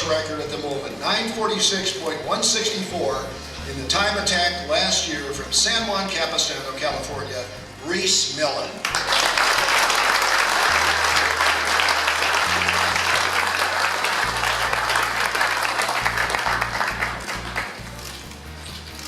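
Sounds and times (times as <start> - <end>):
crowd applauding: 8.8 - 18.2.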